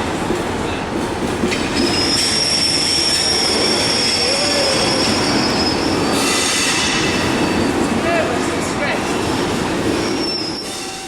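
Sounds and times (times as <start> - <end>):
rumble of wheels on rails: 0.0 - 11.0
train wheel squeal: 1.4 - 8.2, 9.0 - 11.0.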